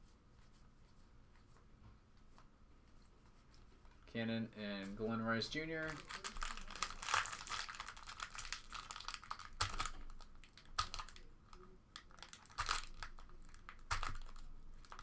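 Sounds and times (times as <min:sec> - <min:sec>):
wrappers crinkling: 0:05.5 - 0:15.0.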